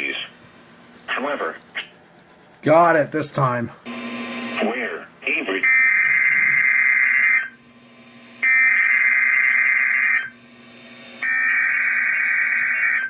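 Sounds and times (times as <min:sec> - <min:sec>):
low steady hum: 0:00.0 - 0:13.0
warbling data screech: 0:05.6 - 0:07.6, 0:08.4 - 0:10.3.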